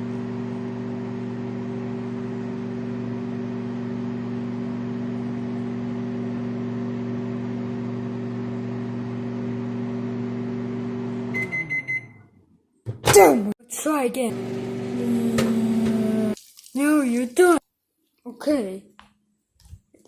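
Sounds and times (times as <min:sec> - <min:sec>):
microwave oven beeping: 0:00.0 - 0:12.5, 0:14.4 - 0:16.4
microwave oven humming: 0:00.0 - 0:12.5, 0:14.2 - 0:16.4.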